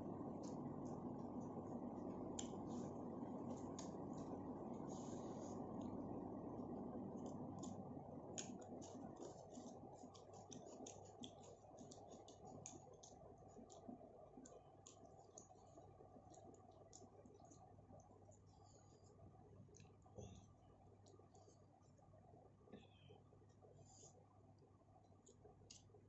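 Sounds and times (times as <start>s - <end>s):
low background rumble: 0.0s - 26.0s
chewing mouth clicks and smacks: 8.4s - 17.6s.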